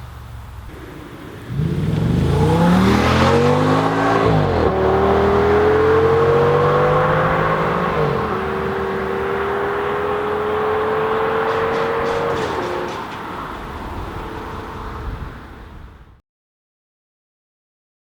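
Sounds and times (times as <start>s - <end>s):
car engine accelerating hard: 0.5s - 13.2s.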